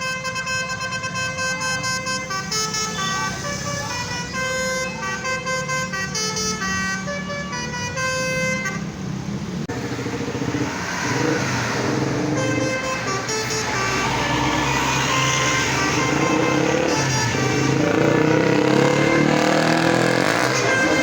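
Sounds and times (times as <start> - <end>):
multi-tone bus horn melody: 0.0 - 9.1, 11.1 - 21.0
bus traffic: 0.0 - 21.0
engine rumble: 1.4 - 21.0
low horn tones: 10.4 - 21.0.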